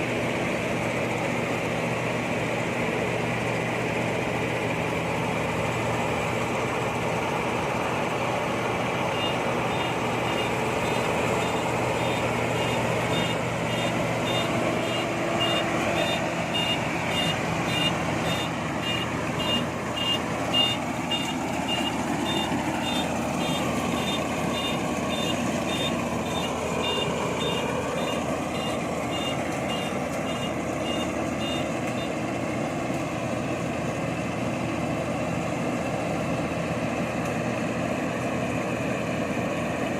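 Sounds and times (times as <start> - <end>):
combine harvester engine running: 0.0 - 39.9
high electronic warning beeps: 9.1 - 32.2.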